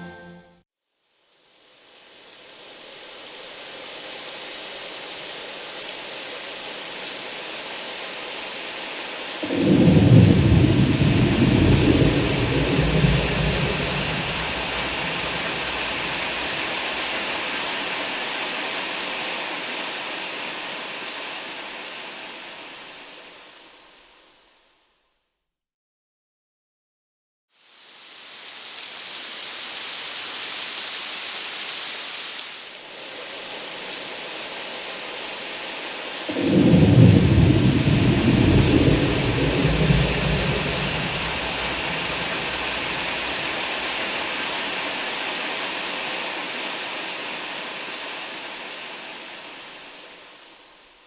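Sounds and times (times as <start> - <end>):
steady rain falling: 1.2 - 24.7, 27.6 - 51.0
low rumble of thunder: 9.4 - 17.2, 36.3 - 44.2.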